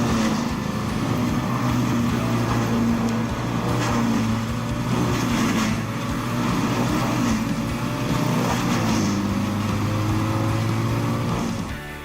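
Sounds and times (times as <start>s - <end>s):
short crackles: 0.0s - 11.7s
heavy diesel engine running: 0.0s - 12.0s.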